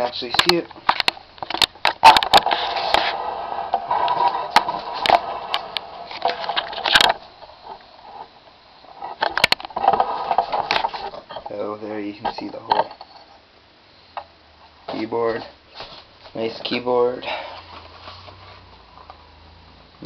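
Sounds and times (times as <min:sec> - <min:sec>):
clicks and knocks: 0:09.0 - 0:11.5.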